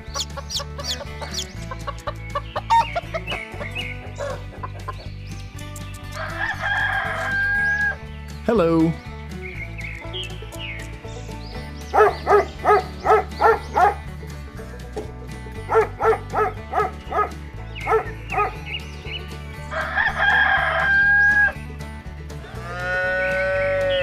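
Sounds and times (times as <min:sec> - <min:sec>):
chicken clucking: 0:00.0 - 0:05.1
background music: 0:00.0 - 0:24.0
rooster crowing: 0:19.7 - 0:21.5
cow mooing: 0:22.5 - 0:24.0.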